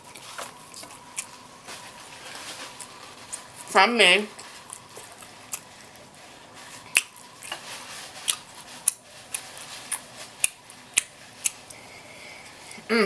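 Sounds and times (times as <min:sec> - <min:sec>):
open-mouth chewing smacks: 0:04.4 - 0:06.1.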